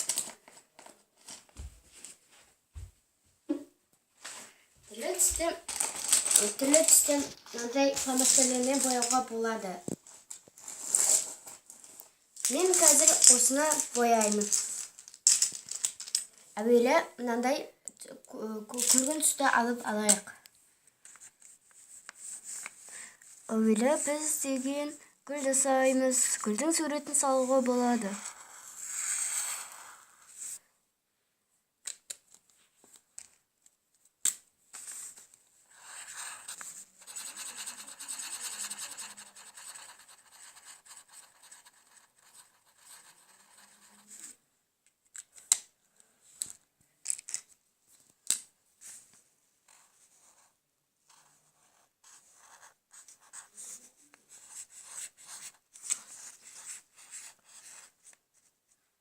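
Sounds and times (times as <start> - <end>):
marker scratching on paper: 5.0 - 9.5, 25.4 - 30.6, 35.7 - 44.4, 49.7 - 58.2.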